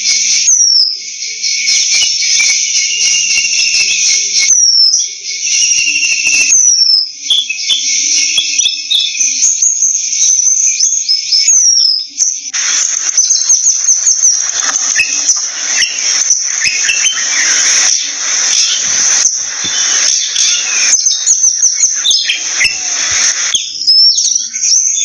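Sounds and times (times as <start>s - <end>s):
bird chirps and whistles: 0.0s - 25.0s
bird sharp falling whistle: 11.6s - 24.5s
brief noisy rush: 12.5s - 23.6s
high-pitched insect chorus: 12.5s - 24.5s.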